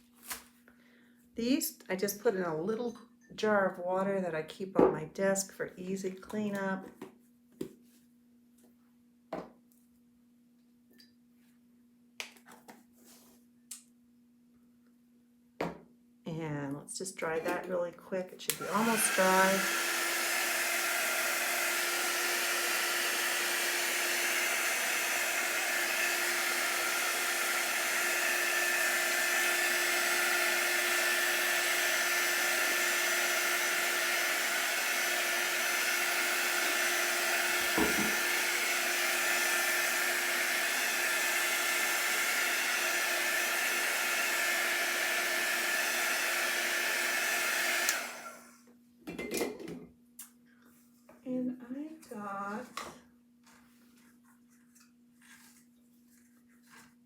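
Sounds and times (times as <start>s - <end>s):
blow dryer humming: 18.5s - 48.6s.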